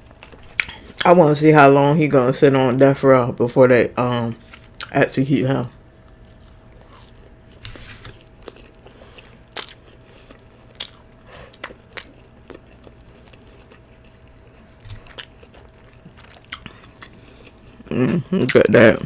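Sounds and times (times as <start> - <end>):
person chewing with mouth smacks: 0.1 - 1.0, 6.0 - 18.6.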